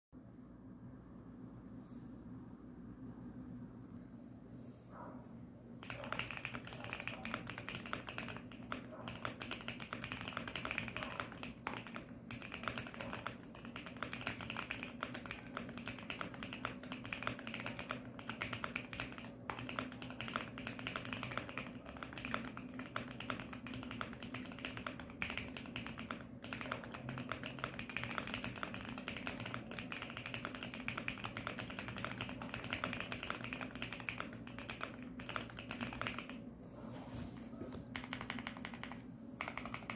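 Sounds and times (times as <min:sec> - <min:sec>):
mechanical keyboard fast typing: 0:05.8 - 0:36.4, 0:37.8 - 0:39.9.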